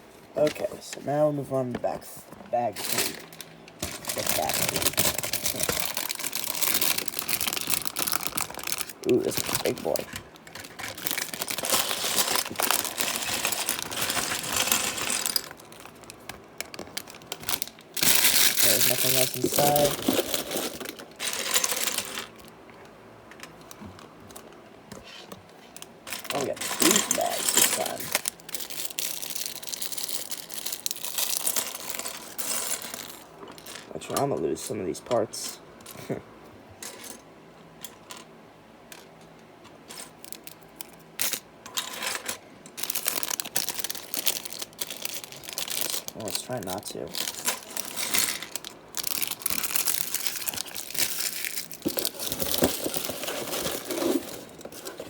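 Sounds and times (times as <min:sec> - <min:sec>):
plastic bag crinkling: 0:02.8 - 0:22.5, 0:26.1 - 0:33.3, 0:42.8 - 0:55.0.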